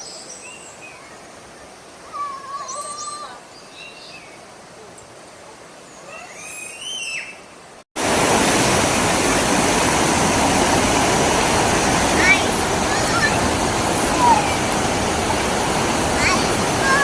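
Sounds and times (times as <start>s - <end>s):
whistled bird calls: 2.5s - 4.4s, 5.9s - 7.5s
water rushing over rocks: 8.0s - 17.0s.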